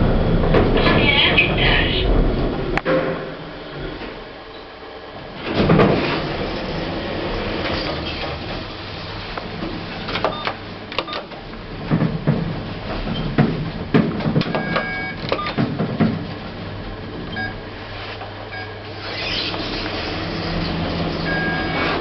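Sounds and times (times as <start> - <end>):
lift machine hum: 0.0 - 22.0.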